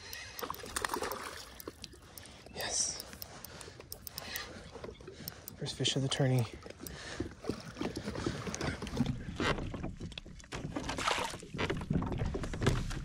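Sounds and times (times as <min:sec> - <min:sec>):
knocks and clatters in kayak: 0:06.2 - 0:13.0.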